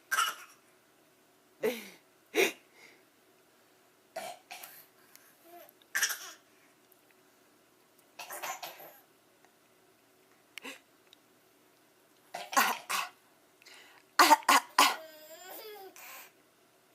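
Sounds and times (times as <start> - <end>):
small child fake coughing: 0.1 - 0.6, 6.0 - 6.4, 8.2 - 9.0, 12.4 - 13.2, 14.2 - 15.9.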